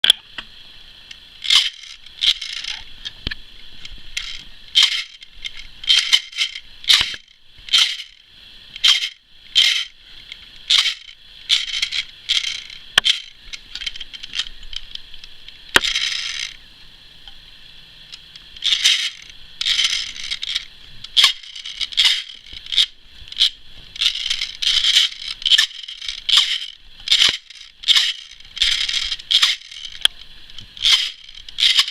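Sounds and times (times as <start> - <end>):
sharp clicks: 1.1 - 8.2, 8.8 - 16.6, 18.1 - 31.9
electric gun gearbox cycling: 1.4 - 2.8, 4.2 - 8.2, 8.8 - 9.9, 10.7 - 14.5, 15.8 - 16.6, 18.1 - 31.9.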